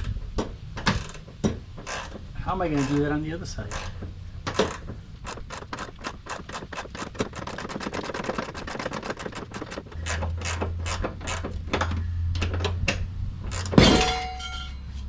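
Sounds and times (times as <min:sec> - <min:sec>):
socket ratchet clicking: 0:00.8 - 0:11.6, 0:13.5 - 0:13.8.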